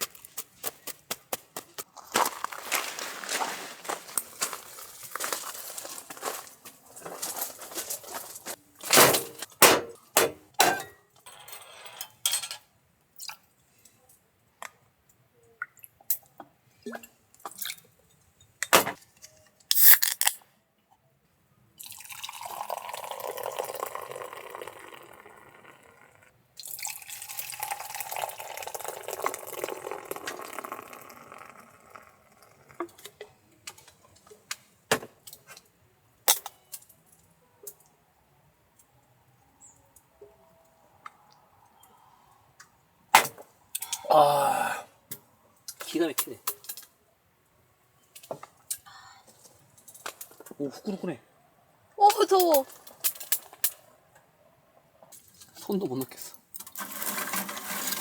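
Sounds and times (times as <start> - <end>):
liquid being poured: 21.8 - 32.9.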